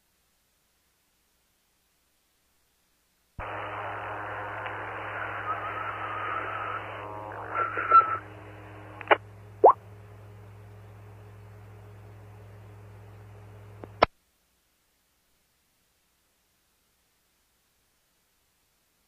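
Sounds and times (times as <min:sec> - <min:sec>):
radio hum and hiss: 0:01.2 - 0:19.0
wavering radio tone: 0:03.4 - 0:09.8
short sharp pops: 0:09.0 - 0:09.8.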